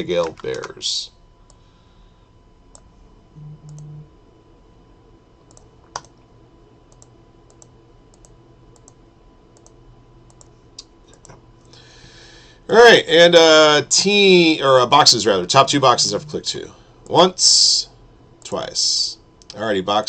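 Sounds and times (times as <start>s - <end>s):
short low hum: 1.1s - 12.8s, 15.0s - 18.5s
computer mouse clicks: 5.4s - 6.2s, 6.9s - 9.0s, 9.6s - 11.8s.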